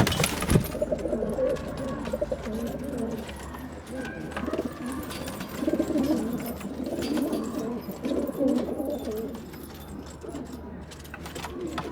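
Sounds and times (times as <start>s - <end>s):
pigeons cooing: 0.0s - 10.6s.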